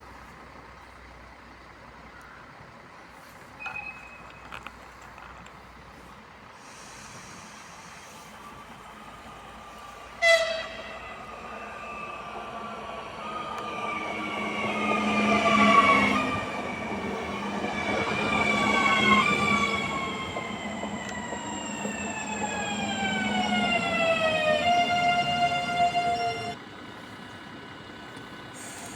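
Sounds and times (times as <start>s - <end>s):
train passing with falling whine: 6.5s - 28.9s
train horn blast: 10.2s - 11.2s.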